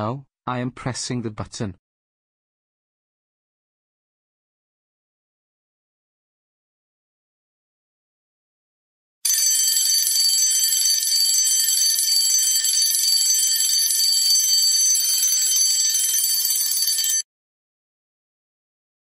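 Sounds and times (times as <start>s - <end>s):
electric school bell ringing: 9.3s - 17.2s.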